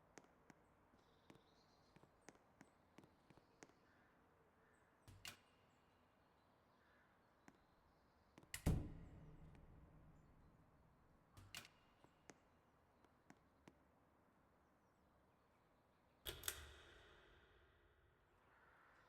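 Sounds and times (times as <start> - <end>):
small clicks: 16.2 - 17.0.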